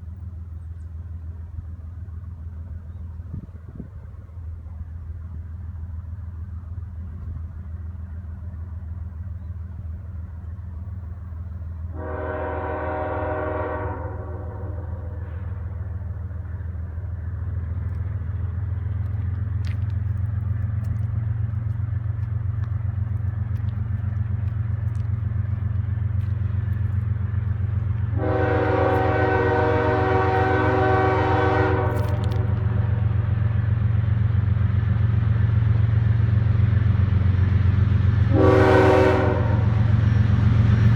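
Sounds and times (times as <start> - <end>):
diesel train engine rumble: 0.0 - 40.9
train air horn blasts: 11.9 - 16.0, 28.1 - 33.2, 38.3 - 39.9.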